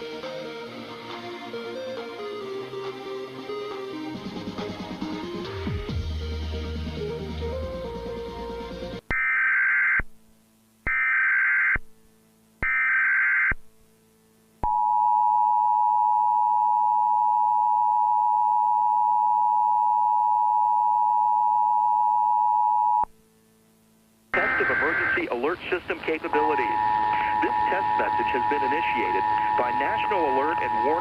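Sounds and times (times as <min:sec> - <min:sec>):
music: 0:00.0 - 0:09.0, 0:24.4 - 0:31.0
two-tone attention signal: 0:24.4 - 0:25.3, 0:26.1 - 0:31.0
buzzy digital data bursts: 0:24.4 - 0:31.0.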